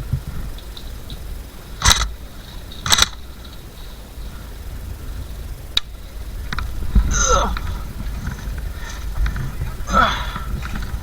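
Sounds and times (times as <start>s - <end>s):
steady low rumble: 0.0s - 11.0s
airsoft gun shots: 1.8s - 2.2s, 2.8s - 3.2s.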